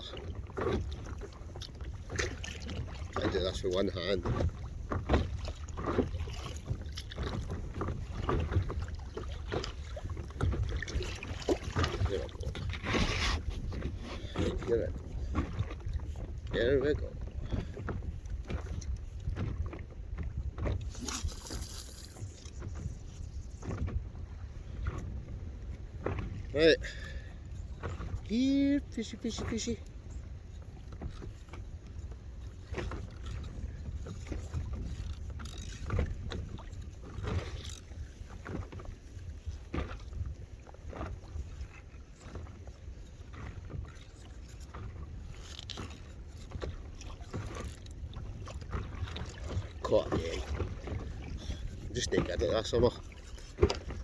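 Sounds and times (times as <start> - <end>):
short splashes or knocks: 0.0 - 22.9, 52.0 - 54.0
water lapping against paddleboard: 0.0 - 54.0
wind rumbling on microphone: 0.0 - 54.0.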